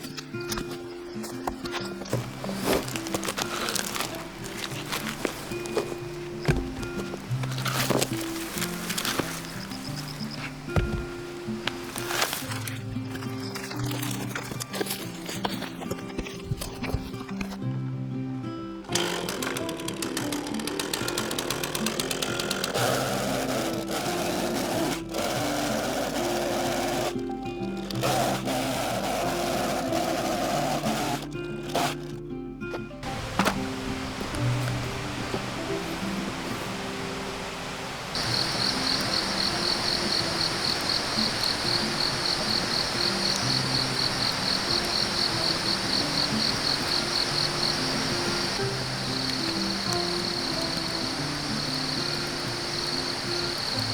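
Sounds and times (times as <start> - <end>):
background music: 0.0 - 53.9
brush cutter running: 18.9 - 32.1, 38.2 - 53.9
insect pulsing buzz: 37.6 - 53.9.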